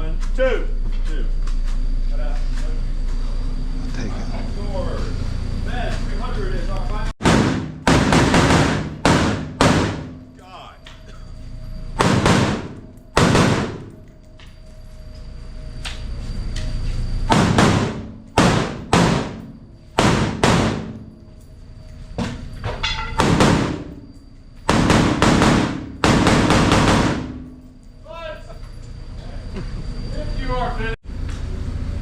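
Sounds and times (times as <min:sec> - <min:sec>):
rifle shots echoing: 0:07.2 - 0:10.2, 0:12.0 - 0:13.9, 0:17.3 - 0:21.0, 0:24.7 - 0:27.5.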